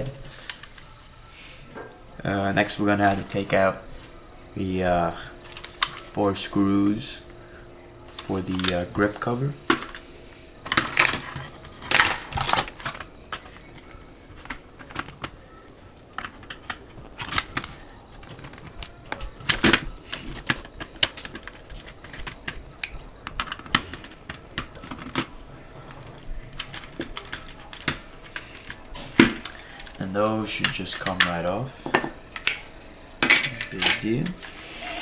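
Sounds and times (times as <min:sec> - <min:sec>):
small parts clacking: 0:10.6 - 0:15.4, 0:16.2 - 0:34.4.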